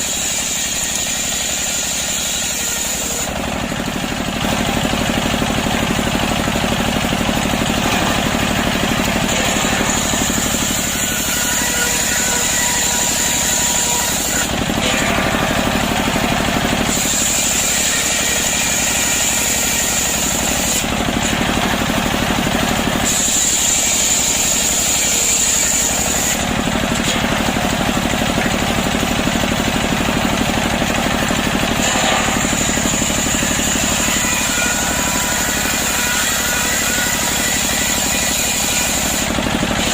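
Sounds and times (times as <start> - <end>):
chainsaw cutting through log: 0.0 - 39.9.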